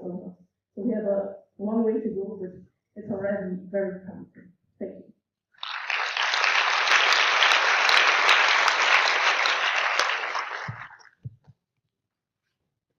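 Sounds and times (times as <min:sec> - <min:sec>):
large audience applauding: 0:05.6 - 0:11.2.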